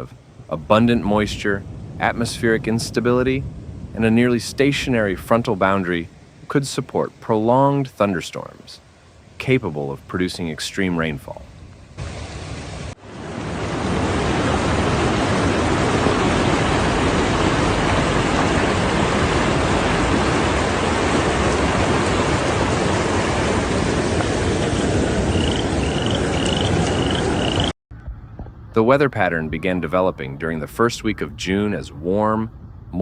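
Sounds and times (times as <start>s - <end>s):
heavy rush of rain and floodwater: 12.0s - 27.7s.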